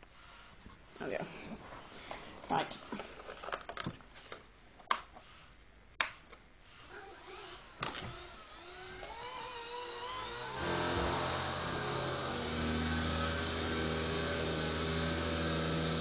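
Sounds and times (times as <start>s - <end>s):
rc helicopter motor whining: 6.9s - 16.0s.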